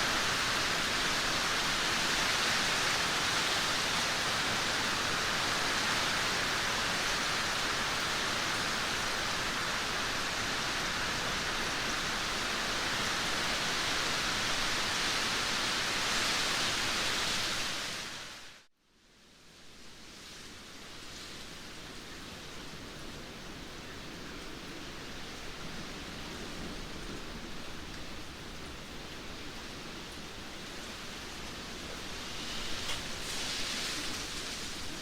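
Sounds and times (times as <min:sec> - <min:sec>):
heavy rain pouring: 0:00.0 - 0:18.5, 0:21.0 - 0:35.0.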